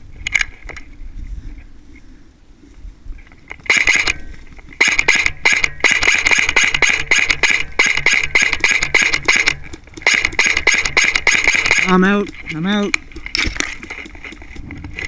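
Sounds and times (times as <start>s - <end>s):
airsoft gun firing rapid shots: 3.7s - 4.2s, 4.8s - 14.1s.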